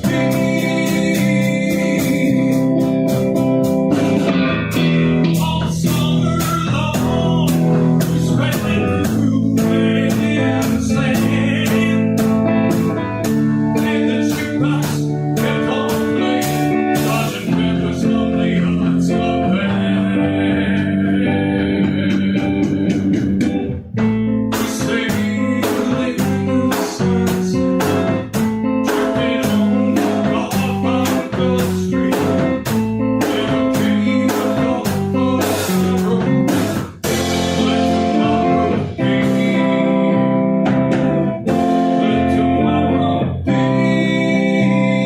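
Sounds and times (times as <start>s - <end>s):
bass line: 0.0s - 45.0s
guitar: 0.0s - 45.0s
drum beat on cymbals: 24.5s - 38.6s.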